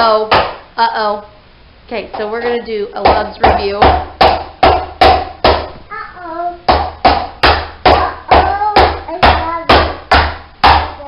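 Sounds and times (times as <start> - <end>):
loud sharp ringing knocks: 3.0 - 5.8, 6.7 - 11.0.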